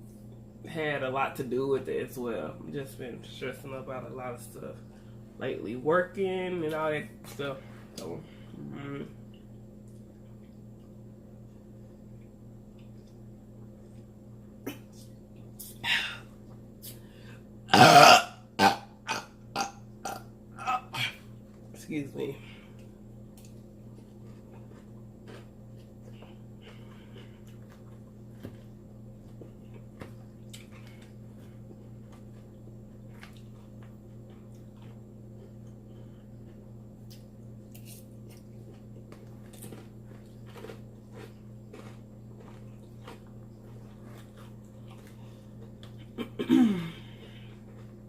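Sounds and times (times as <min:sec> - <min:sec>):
steady low hum: 0:00.0 - 0:48.0
chewing salad: 0:09.0 - 0:17.0, 0:22.7 - 0:46.2, 0:47.3 - 0:48.0
loud burp: 0:17.7 - 0:21.0.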